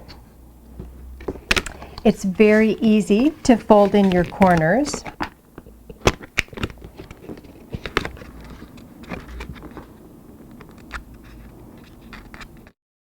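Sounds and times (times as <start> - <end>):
board and paper taps and rustles: 0.8 - 9.9.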